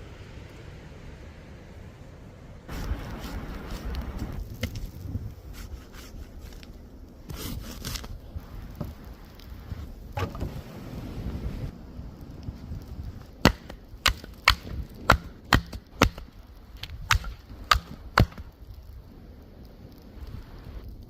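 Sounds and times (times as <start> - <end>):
firewood chopping: 13.2 - 18.6.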